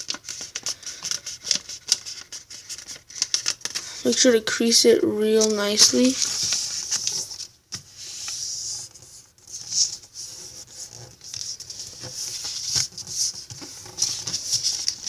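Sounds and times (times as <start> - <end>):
small paper clicks: 0.0 - 3.8
fingers rubbing paper fold: 0.0 - 4.3, 5.2 - 15.0.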